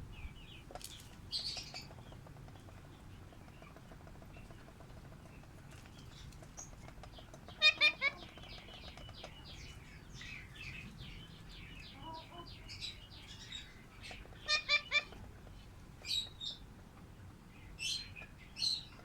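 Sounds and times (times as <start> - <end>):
lovebirds chirping and chattering: 0.0 - 19.0
lovebirds shrill calls: 6.1 - 15.2.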